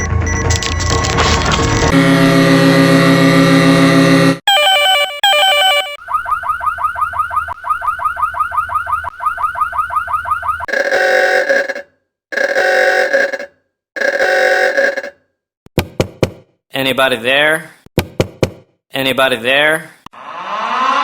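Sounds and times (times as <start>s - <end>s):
long electronic ringing tones: 1.9s - 15.1s
fast repeating rising chirp: 6.0s - 10.7s.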